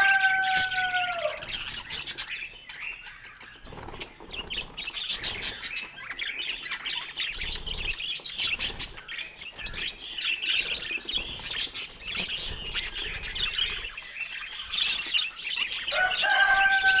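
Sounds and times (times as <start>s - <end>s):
budgerigars chattering: 0.0s - 17.0s.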